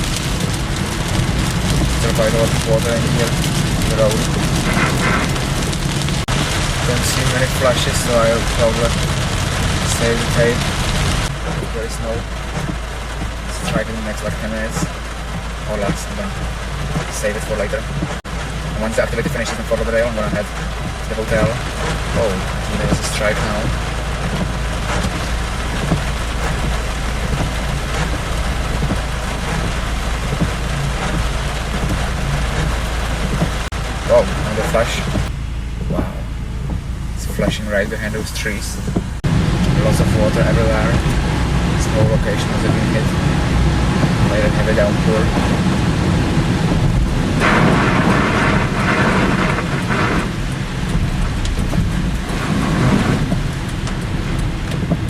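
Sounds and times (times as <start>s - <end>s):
constant low rumble: 0.0s - 55.0s
steady rain falling: 0.0s - 55.0s.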